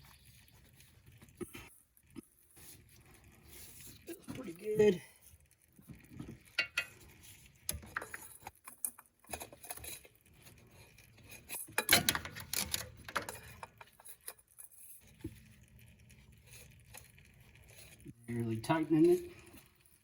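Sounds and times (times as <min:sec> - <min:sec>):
metallic clinks and scrapes: 0:00.0 - 0:20.0.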